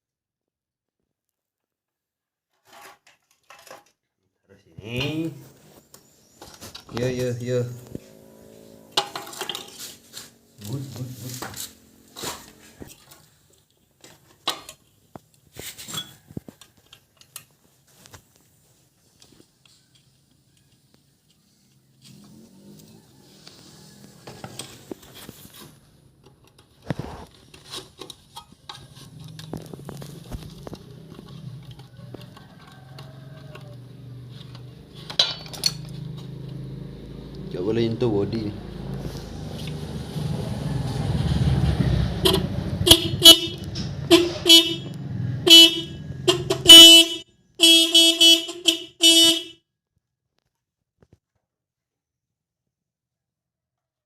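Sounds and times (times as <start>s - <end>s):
motorcycle horn beeps: 42.1s - 49.6s.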